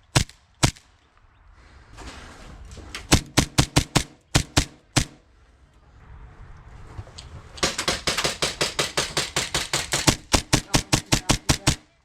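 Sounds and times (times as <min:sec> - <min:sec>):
airsoft pistol shots: 0:00.1 - 0:00.9, 0:03.1 - 0:05.2, 0:07.6 - 0:11.9.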